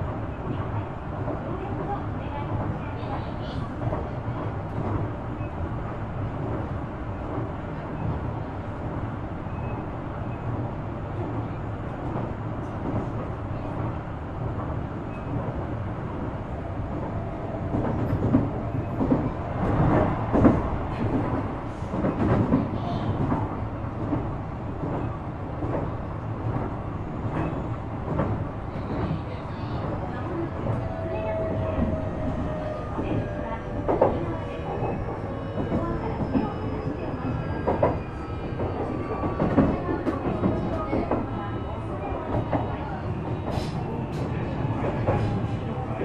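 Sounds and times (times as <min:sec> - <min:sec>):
train wheels rumbling on rail: 0:00.0 - 0:46.0.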